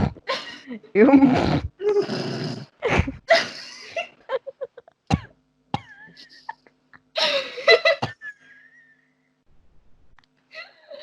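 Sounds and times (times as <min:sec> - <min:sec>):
person coughing: 0:07.2 - 0:08.3.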